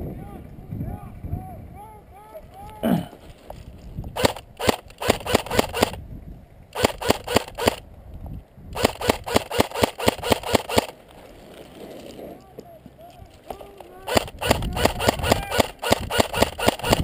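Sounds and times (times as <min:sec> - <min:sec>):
airsoft rifle shots: 0:04.2 - 0:06.0, 0:06.7 - 0:07.8, 0:08.8 - 0:11.0, 0:14.0 - 0:17.0.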